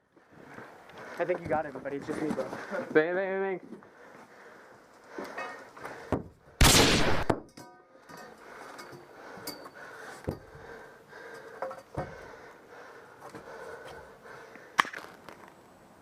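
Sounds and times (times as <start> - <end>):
close breathing: 0.2 - 1.3, 2.4 - 2.9, 3.8 - 6.6, 8.2 - 14.8.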